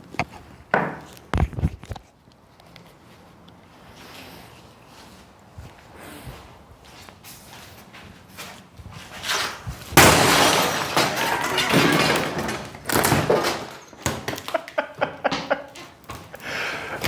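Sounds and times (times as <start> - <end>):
breaking and shattering crash: 9.9 - 14.5
clinks of breaking pieces: 10.0 - 14.6.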